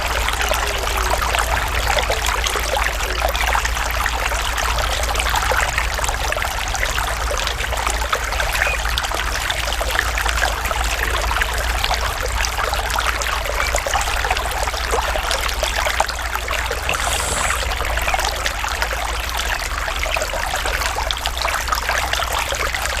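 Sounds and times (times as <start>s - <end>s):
stream trickling and splashing: 0.0s - 23.0s.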